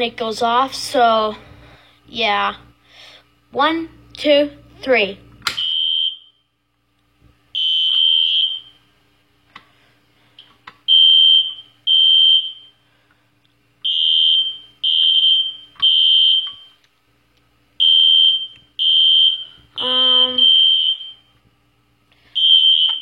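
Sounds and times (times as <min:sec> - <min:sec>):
fire alarm horn blasts: 0:05.6 - 0:06.5, 0:07.6 - 0:08.8, 0:10.9 - 0:12.7, 0:13.8 - 0:16.7, 0:17.8 - 0:21.2, 0:22.4 - 0:23.0.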